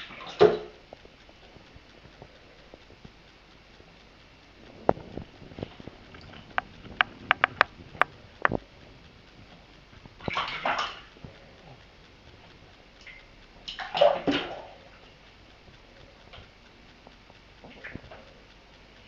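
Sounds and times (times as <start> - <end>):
water splashing: 0.0 - 0.8, 10.2 - 11.2, 13.0 - 15.0, 17.6 - 18.3
sharp taps: 6.1 - 8.6.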